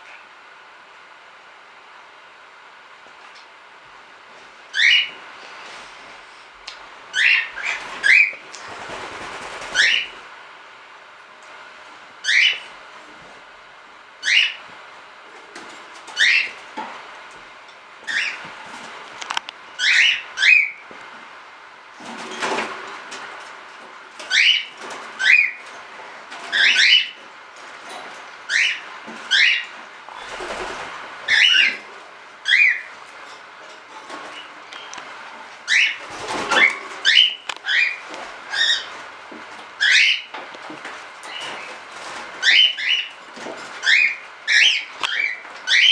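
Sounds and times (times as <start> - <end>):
cockatiels calling: 4.7 - 5.2, 7.1 - 8.4, 9.5 - 10.2, 12.2 - 12.7, 14.2 - 14.6, 16.1 - 16.6, 18.1 - 18.5, 19.8 - 20.8, 24.2 - 25.6, 26.4 - 27.2, 28.5 - 30.6, 31.3 - 32.9, 35.6 - 39.0, 39.8 - 40.4, 41.2 - 43.2, 43.8 - 45.9
wings flapping: 7.6 - 10.2, 30.1 - 31.4, 36.0 - 37.3.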